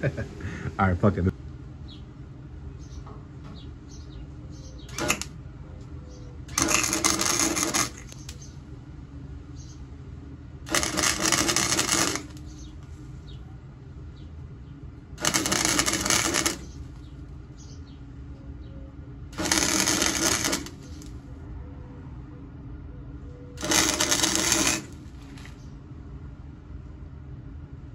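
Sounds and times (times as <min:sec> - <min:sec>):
welder low hum: 0:04.8 - 0:05.4, 0:06.2 - 0:13.3, 0:14.9 - 0:17.6, 0:19.0 - 0:21.6, 0:23.4 - 0:25.2
welder crackling and sizzling: 0:04.9 - 0:05.3, 0:06.5 - 0:08.4, 0:10.7 - 0:12.7, 0:15.2 - 0:17.1, 0:19.4 - 0:21.2, 0:23.6 - 0:25.4.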